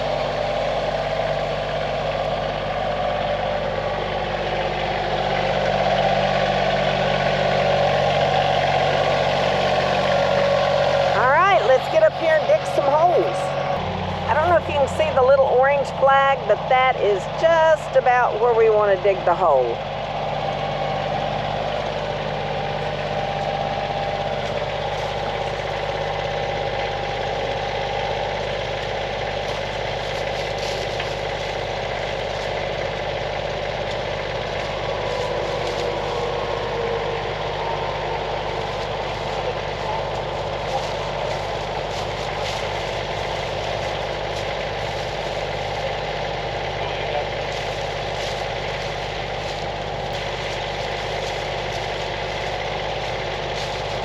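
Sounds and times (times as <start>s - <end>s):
tractor diesel engine under load: 0.0s - 54.0s
whining tone: 0.0s - 54.0s.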